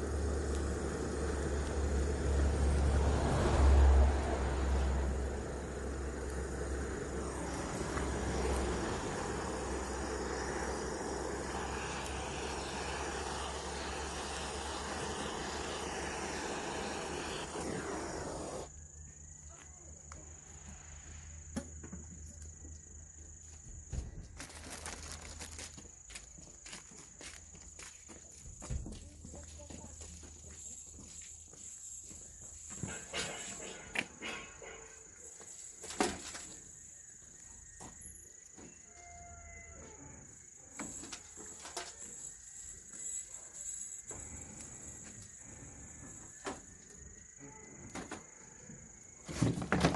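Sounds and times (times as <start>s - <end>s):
blowtorch flame hissing: 0.0s - 18.7s, 40.8s - 46.4s
firewood crackling: 0.0s - 18.7s, 24.4s - 25.8s
high-pitched insect chirring: 40.0s - 46.4s.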